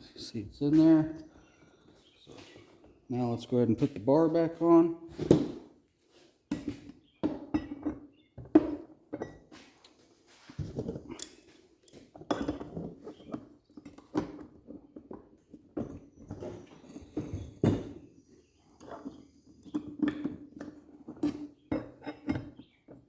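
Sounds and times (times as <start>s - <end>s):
hard parts clinking and knocking: 10.6s - 18.1s.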